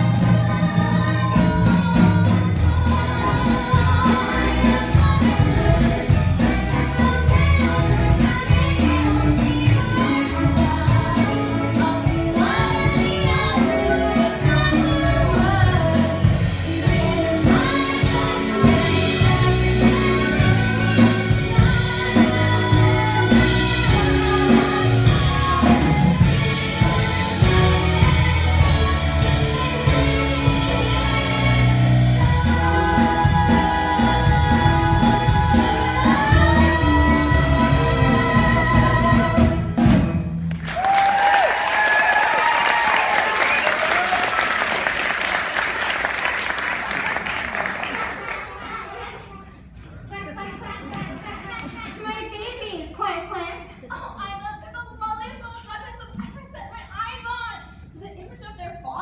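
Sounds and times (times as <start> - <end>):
group of voices singing: 0.0 - 39.8
instrumental backing with bass: 0.0 - 41.0.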